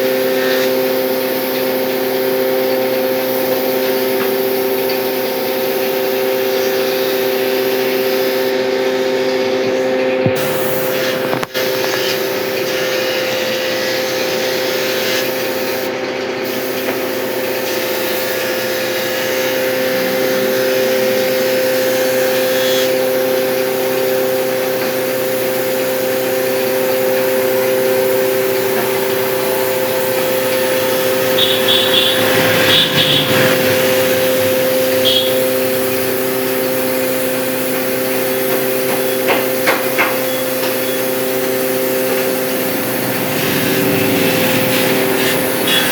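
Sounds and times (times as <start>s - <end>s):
power tool motor on wood: 10.2s - 15.6s, 16.8s - 45.9s.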